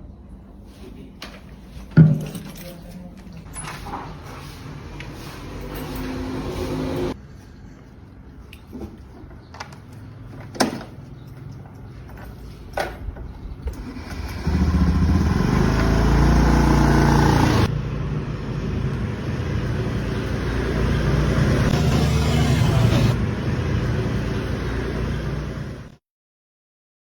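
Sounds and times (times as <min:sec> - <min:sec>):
vehicle engine running: 0:14.1 - 0:26.0.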